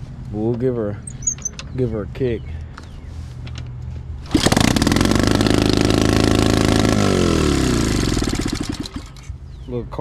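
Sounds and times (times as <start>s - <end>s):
motorbike engine revving high: 4.2s - 9.2s
pit bike engine kick-started: 4.2s - 9.3s.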